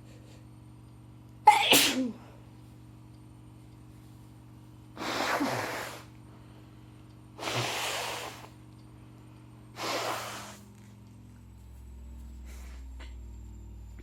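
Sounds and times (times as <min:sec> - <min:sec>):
woman sneezing: 0:01.5 - 0:02.2, 0:05.0 - 0:06.1.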